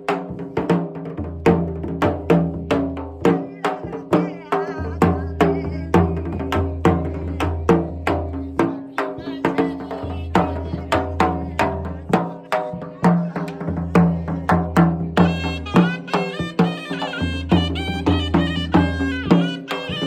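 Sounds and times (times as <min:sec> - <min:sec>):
reedy wind melody: 0:15.2 - 0:20.0
struck ringing notes: 0:15.2 - 0:20.0.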